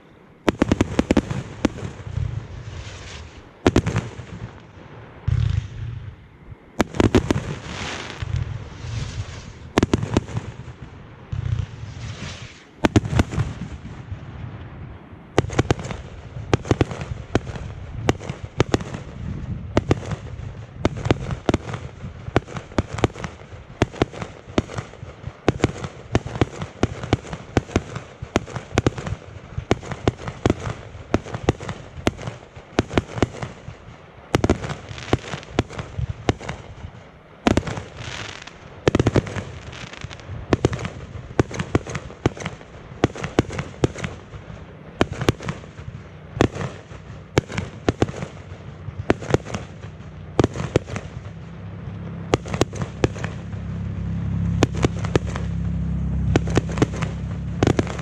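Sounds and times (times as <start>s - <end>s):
fireworks bangs and cracks: 0.0s - 58.0s
low steady rumble: 33.5s - 58.0s.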